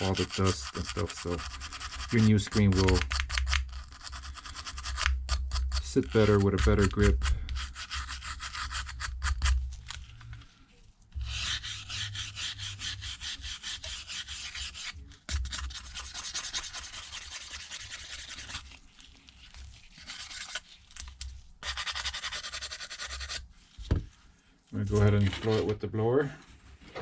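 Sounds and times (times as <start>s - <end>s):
small brush scrubbing: 0.0s - 9.8s, 10.8s - 23.8s.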